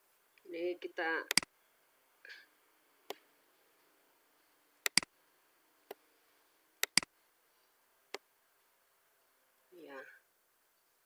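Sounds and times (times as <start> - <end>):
computer mouse clicking: 4.9 - 5.1, 6.8 - 7.1.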